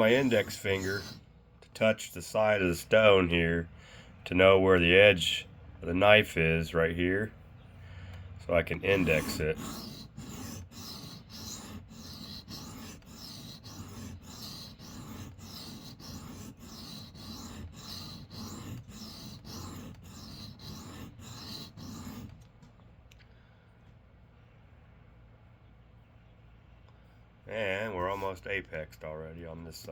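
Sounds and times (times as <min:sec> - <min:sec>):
knife scraping on sharpening stone: 0:00.0 - 0:01.2, 0:08.9 - 0:22.3.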